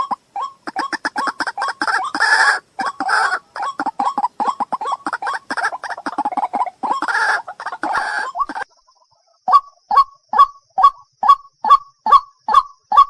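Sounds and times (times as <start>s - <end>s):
waterhen calling: 0.0s - 8.8s.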